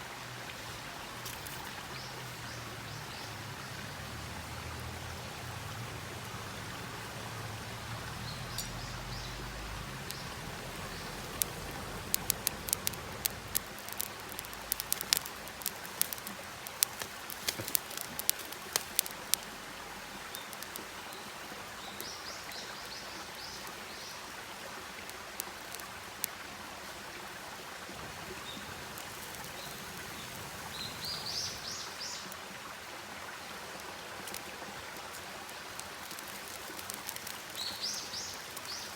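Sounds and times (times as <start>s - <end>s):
steady rushing hiss: 0.0s - 38.9s
campfire crackling and popping: 6.6s - 21.3s, 24.9s - 26.4s, 28.4s - 31.7s, 33.7s - 38.9s.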